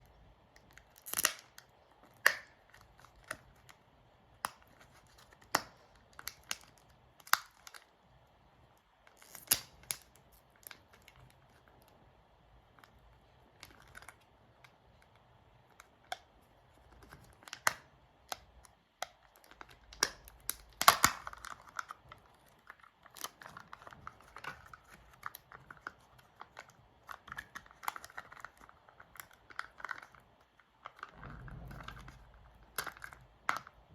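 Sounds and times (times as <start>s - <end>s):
packaging crinkling and tearing: 19.3s - 31.1s.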